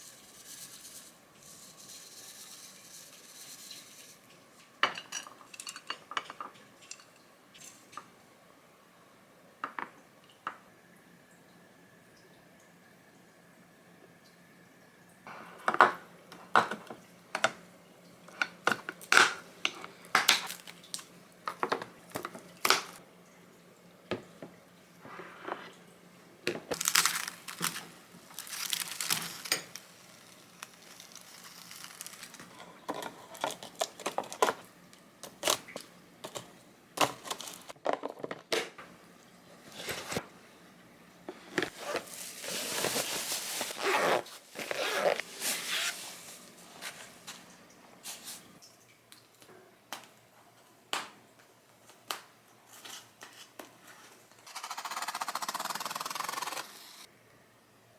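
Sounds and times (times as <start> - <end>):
plastic packaging crinkling: 26.7 - 32.6, 37.0 - 37.7, 41.7 - 46.5.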